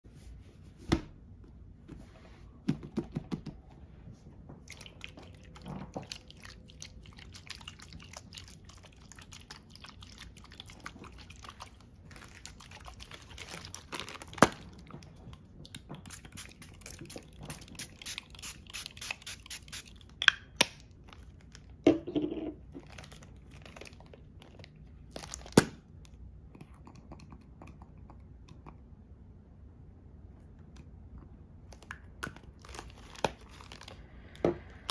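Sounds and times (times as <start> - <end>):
crinkly scratching and rustling: 32.6 - 34.0.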